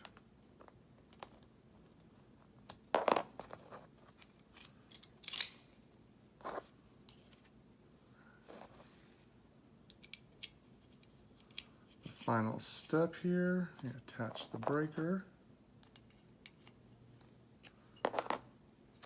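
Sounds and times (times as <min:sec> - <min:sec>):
small metal parts clicking: 0:04.2 - 0:05.8.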